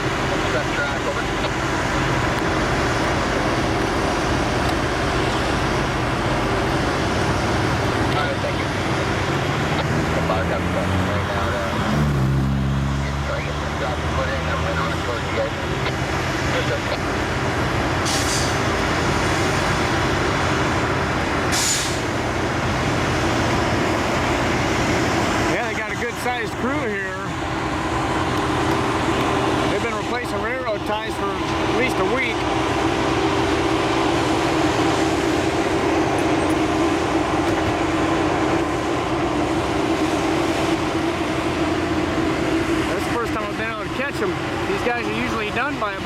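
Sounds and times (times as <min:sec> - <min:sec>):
heavy engine running: 0:00.0 - 0:46.0
air brakes hissing: 0:18.0 - 0:18.6, 0:21.5 - 0:22.2.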